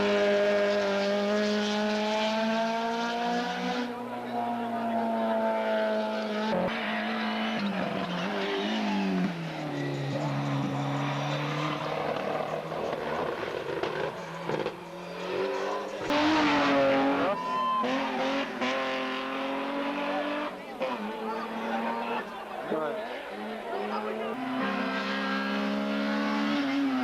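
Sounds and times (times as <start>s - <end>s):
racing car engine revving: 0.0s - 22.4s, 23.2s - 27.0s.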